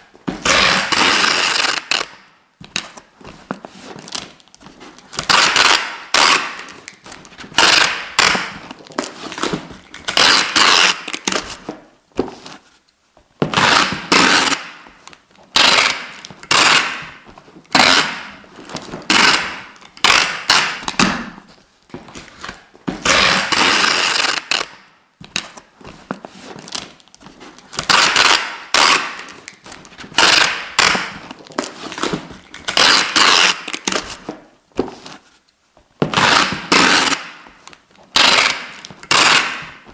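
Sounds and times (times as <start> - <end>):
adhesive tape ripping off roll: 0.4 - 2.2, 5.1 - 11.6, 13.5 - 14.8, 15.6 - 18.4, 19.0 - 21.4, 23.0 - 25.5, 27.7 - 34.2, 36.1 - 37.4, 38.2 - 39.9.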